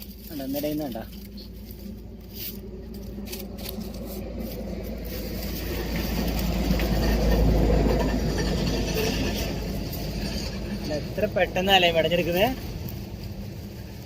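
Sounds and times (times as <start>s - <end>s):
road vehicle passing by: 0.0s - 14.0s.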